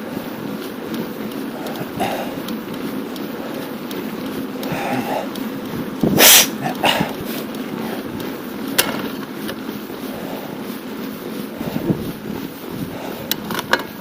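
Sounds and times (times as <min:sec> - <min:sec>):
wind and bicycle riding noise: 0:00.0 - 0:10.7, 0:11.4 - 0:14.0.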